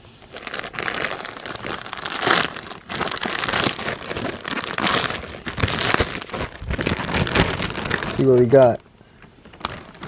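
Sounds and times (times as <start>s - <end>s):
plastic bag crinkling: 0.2s - 10.0s.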